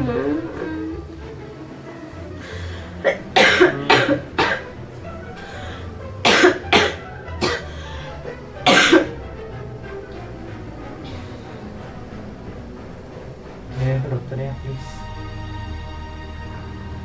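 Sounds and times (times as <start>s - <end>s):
soft background music: 0.0s - 17.0s
woman coughing: 3.1s - 4.6s, 6.3s - 7.7s, 8.7s - 9.1s.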